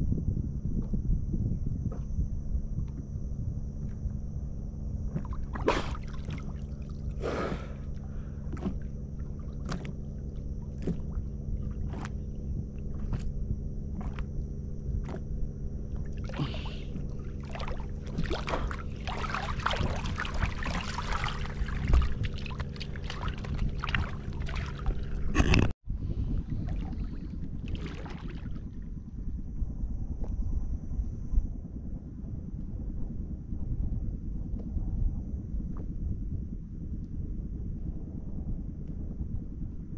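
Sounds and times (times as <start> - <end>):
wind rumble on microphone: 0.0 - 39.9
boat engine running: 0.3 - 31.0
water splashing around hull: 1.8 - 29.3.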